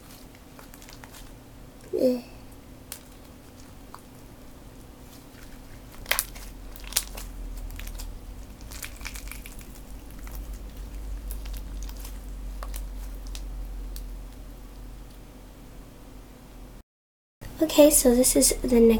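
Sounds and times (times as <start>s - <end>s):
slime squished in hands: 0.0s - 2.0s, 2.8s - 14.4s.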